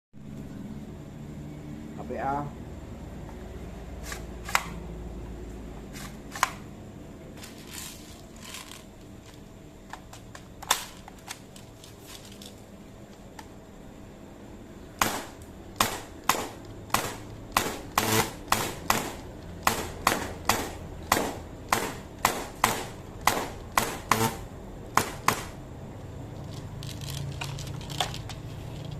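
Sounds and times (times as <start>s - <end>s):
airsoft gun shots popping: 15.0s - 24.4s.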